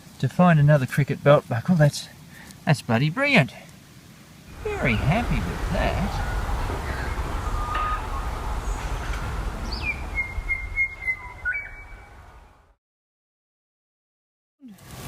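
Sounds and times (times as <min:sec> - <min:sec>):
wind rumble on microphone: 0:04.5 - 0:12.8
bird whistling: 0:04.6 - 0:12.5.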